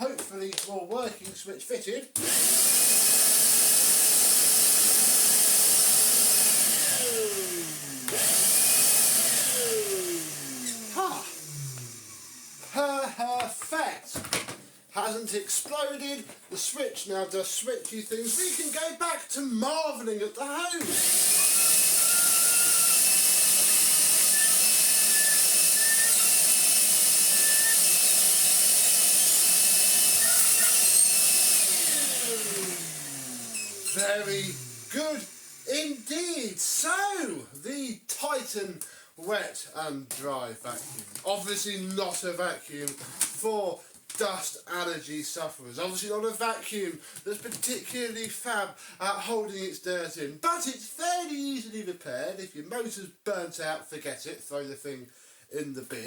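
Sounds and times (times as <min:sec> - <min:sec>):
vacuum motor running: 0:02.2 - 0:12.7, 0:20.8 - 0:36.1
motor winding down whine: 0:20.8 - 0:35.8.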